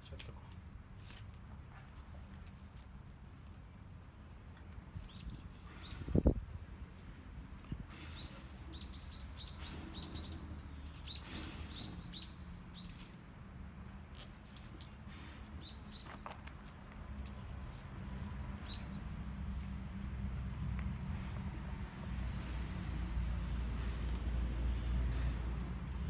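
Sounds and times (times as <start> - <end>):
small birds chirping: 4.9 - 6.3, 7.6 - 13.2, 14.5 - 16.6, 17.2 - 19.8.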